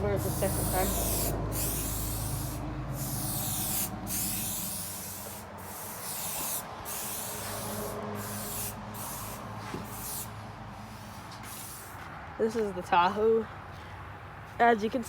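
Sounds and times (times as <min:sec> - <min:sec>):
spray paint can hissing: 0:00.0 - 0:10.3, 0:11.4 - 0:12.0.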